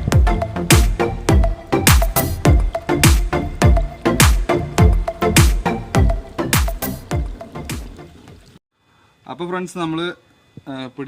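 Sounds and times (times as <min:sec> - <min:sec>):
deep kick drums: 0:00.0 - 0:08.0
electronic dance music: 0:00.0 - 0:08.0.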